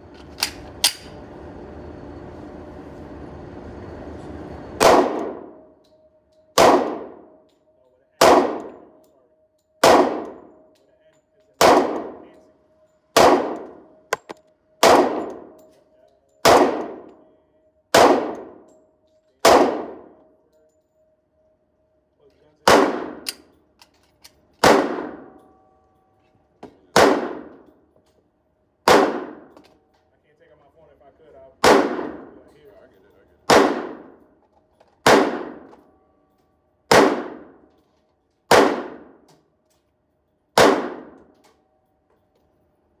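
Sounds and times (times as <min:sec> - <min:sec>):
pistol shots with ringing echo: 0:04.8 - 0:05.7, 0:06.5 - 0:07.4, 0:08.2 - 0:09.0, 0:09.8 - 0:10.7, 0:11.6 - 0:12.4, 0:13.1 - 0:15.7, 0:16.4 - 0:17.3, 0:17.9 - 0:18.7, 0:19.4 - 0:20.3, 0:22.6 - 0:23.4, 0:24.6 - 0:25.4, 0:26.9 - 0:27.7, 0:28.8 - 0:29.6, 0:31.6 - 0:32.4, 0:33.5 - 0:34.2, 0:35.0 - 0:35.8, 0:36.9 - 0:37.7, 0:38.5 - 0:39.3, 0:40.6 - 0:41.3.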